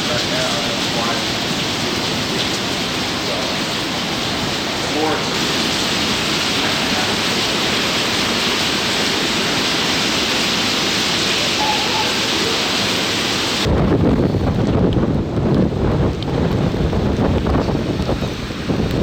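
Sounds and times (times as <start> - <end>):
rain and surf hiss: 0.0 - 19.0
wind buffeting microphone: 11.6 - 19.0.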